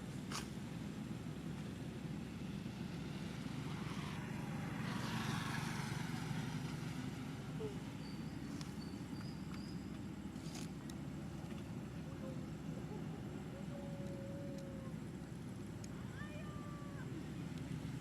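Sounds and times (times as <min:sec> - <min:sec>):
passing vehicle motor drone: 0:02.2 - 0:08.9.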